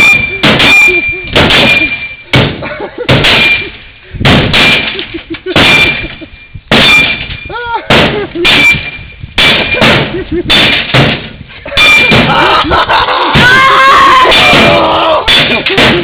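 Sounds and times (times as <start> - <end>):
heavy blows on sheet metal: 0.0 - 16.0
person crying out: 7.5 - 7.9.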